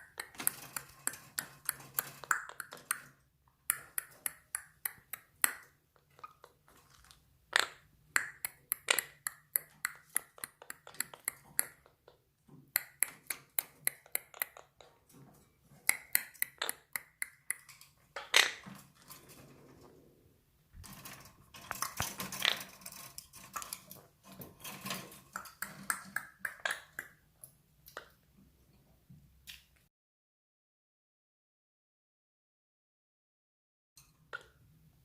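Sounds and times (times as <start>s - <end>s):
parakeet clicking: 0.0s - 6.5s, 8.1s - 12.0s, 12.8s - 14.9s, 15.8s - 18.6s, 24.8s - 27.2s.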